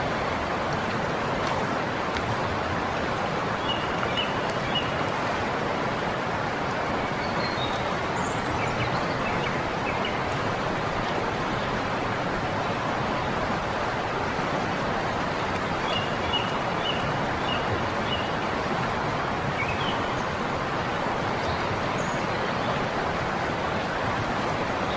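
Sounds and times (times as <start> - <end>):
river water rushing: 0.0 - 24.9.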